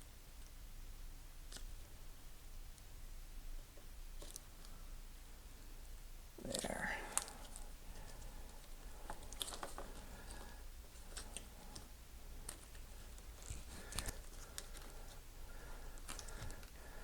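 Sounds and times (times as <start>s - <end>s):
small parts clicking: 16.0s - 16.8s.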